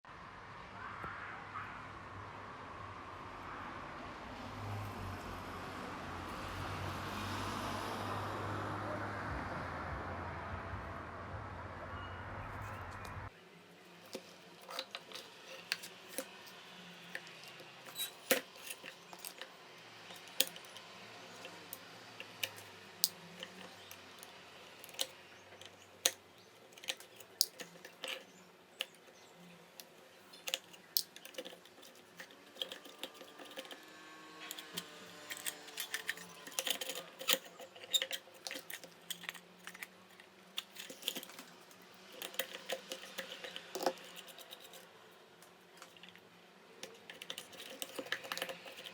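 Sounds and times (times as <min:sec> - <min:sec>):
small metal parts clicking and knocking: 0:14.0 - 0:48.9.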